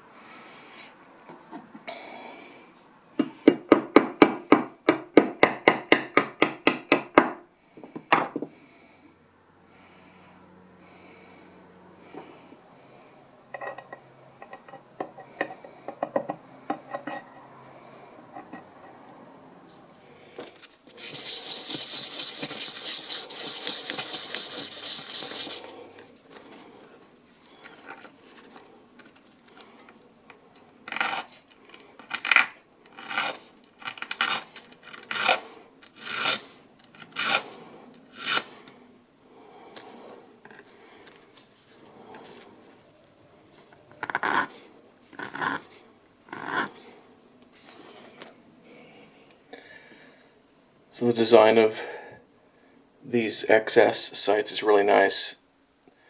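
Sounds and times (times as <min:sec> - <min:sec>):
sandpaper rubbing on metal: 0:20.8 - 0:25.8, 0:33.0 - 0:37.6, 0:38.2 - 0:38.6.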